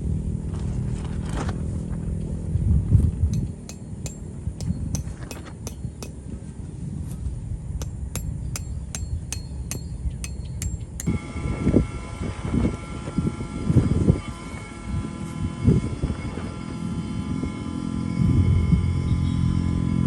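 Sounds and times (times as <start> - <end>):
sharp metallic taps: 3.4 - 6.2, 7.8 - 11.2.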